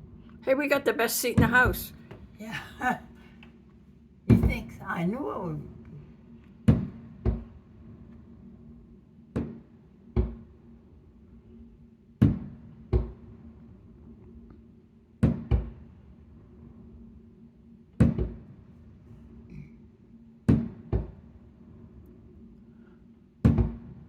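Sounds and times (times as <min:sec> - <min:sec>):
steady low hum: 0:00.0 - 0:09.1.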